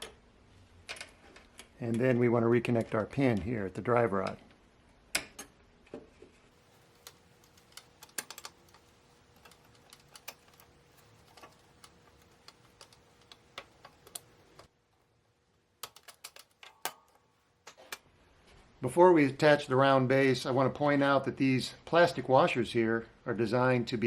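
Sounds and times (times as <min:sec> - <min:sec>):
small metal parts clicking: 0:06.6 - 0:14.7, 0:15.8 - 0:18.0.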